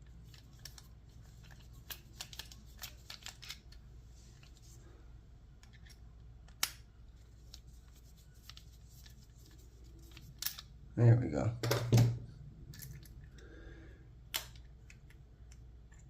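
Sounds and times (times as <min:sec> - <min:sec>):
screwdriver and metal parts clicking: 0:00.3 - 0:03.8, 0:10.1 - 0:10.7.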